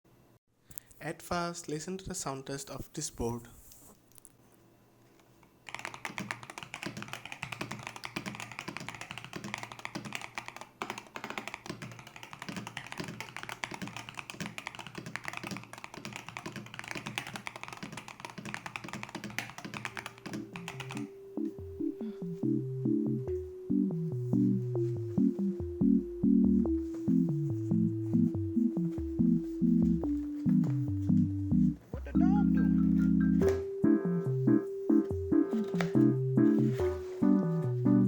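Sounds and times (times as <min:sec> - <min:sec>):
fast keyboard typing: 0:05.6 - 0:21.6, 0:35.4 - 0:36.2
electronic music: 0:20.3 - 0:38.0.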